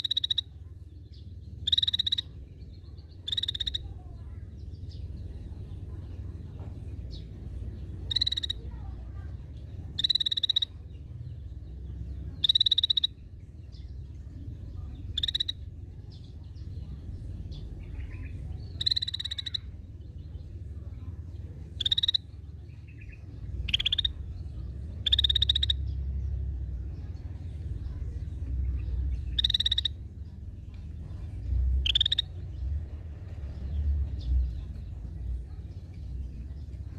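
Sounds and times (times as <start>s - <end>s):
bird giving pulsed calls: 0.0s - 0.5s, 1.6s - 2.3s, 8.1s - 8.6s, 10.0s - 10.7s, 12.4s - 13.2s, 18.8s - 19.7s, 21.8s - 22.3s, 23.7s - 24.1s, 25.0s - 25.9s, 29.3s - 30.0s, 31.8s - 32.3s
steady low rumble: 0.0s - 36.9s.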